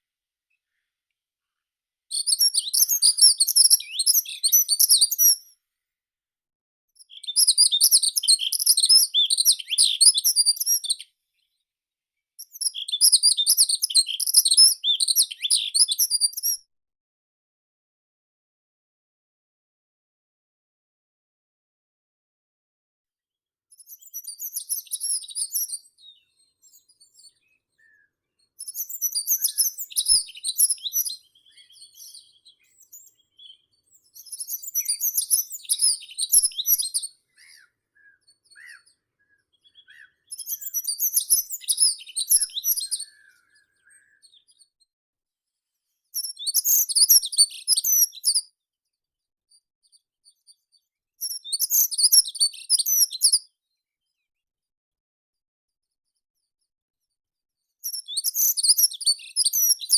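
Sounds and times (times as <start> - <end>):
faint soft bird calls: 0.5 - 1.6, 23.8 - 44.8
songbird singing high-pitched song: 2.1 - 5.6, 7.0 - 11.6, 12.4 - 16.7, 23.7 - 44.9, 45.9 - 54.4, 57.6 - 59.9.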